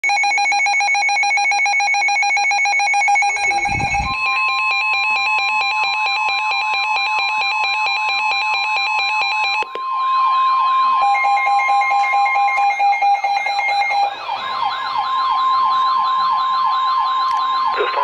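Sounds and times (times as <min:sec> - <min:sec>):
rapidly pulsing electronic alarm: 0:00.0 - 0:18.0
steady high alarm tone: 0:00.0 - 0:18.0
warbling siren-like tone: 0:03.1 - 0:05.2
short low rumble: 0:03.4 - 0:04.2.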